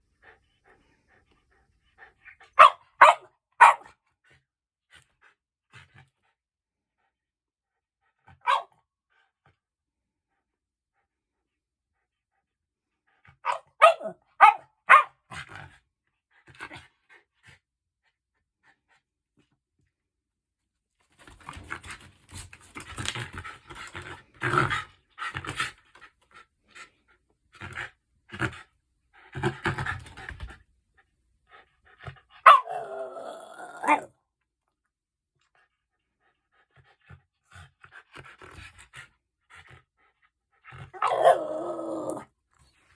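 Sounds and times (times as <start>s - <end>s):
dog panting: 0.0s - 3.2s, 21.2s - 32.6s, 35.4s - 41.0s
dog barking: 2.6s - 3.9s, 8.4s - 8.7s, 13.4s - 15.2s, 32.4s - 34.1s, 41.0s - 41.6s.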